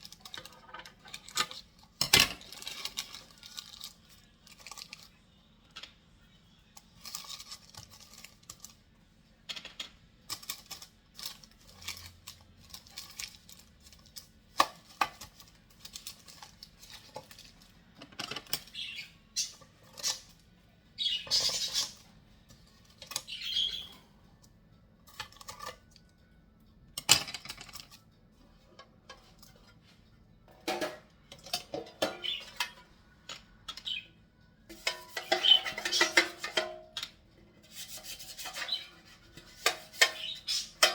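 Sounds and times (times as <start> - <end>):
dishes and utensils clattering: 0.0 - 5.0, 25.0 - 26.0, 27.0 - 34.0, 34.7 - 40.9.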